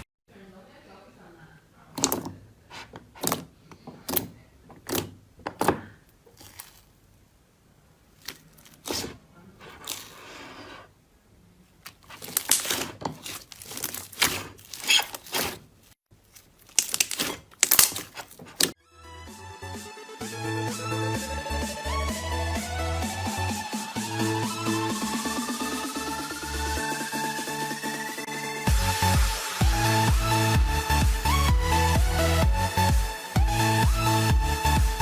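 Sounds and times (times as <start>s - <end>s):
slime popping and crackling: 6.2s - 7.0s, 8.2s - 9.2s, 11.8s - 15.6s, 16.2s - 18.8s
electronic music: 18.8s - 35.0s.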